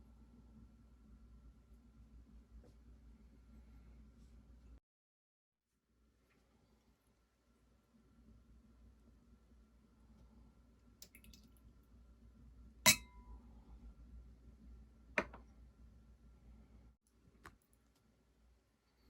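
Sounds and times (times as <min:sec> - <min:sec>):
glassware clinking: 0:12.9 - 0:13.3.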